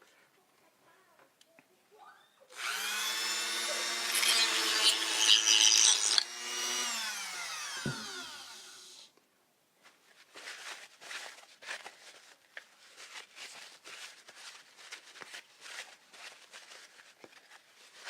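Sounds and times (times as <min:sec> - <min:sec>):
rotary tool motor whine: 0:02.5 - 0:09.1
rotary tool rasping against something: 0:02.6 - 0:09.0.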